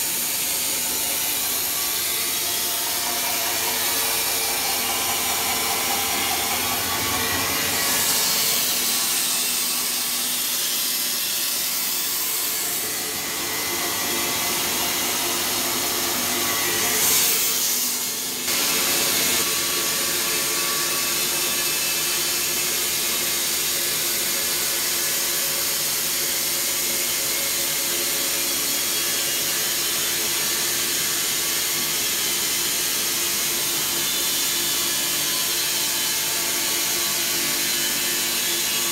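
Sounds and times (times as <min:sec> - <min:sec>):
band sawmill sawing log: 0:00.1 - 0:22.8.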